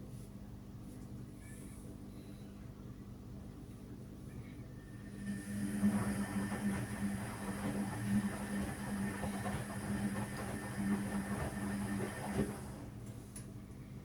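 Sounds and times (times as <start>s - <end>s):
washing machine motor hum: 4.7s - 14.0s.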